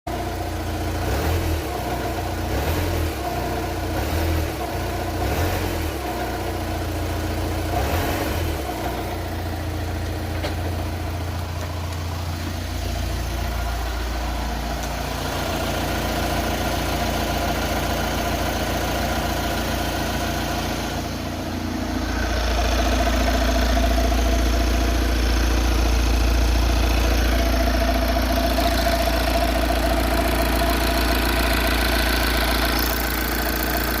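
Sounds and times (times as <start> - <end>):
van engine idling: 0.1 - 34.0
engine knocks: 8.6 - 34.0.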